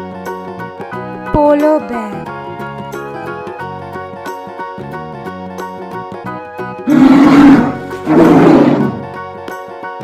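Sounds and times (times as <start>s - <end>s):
light children's music plucked strings: 0.0s - 6.8s
loud animal roar: 6.9s - 9.1s.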